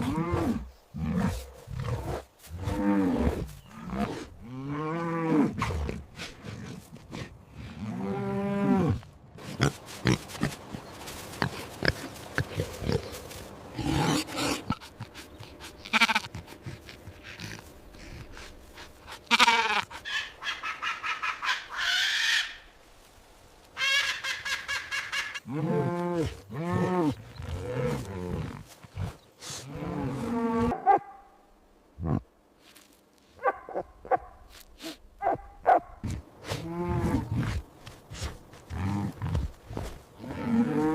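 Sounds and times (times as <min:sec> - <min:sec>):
livestock calls: 0:14.6 - 0:16.8, 0:19.2 - 0:22.6.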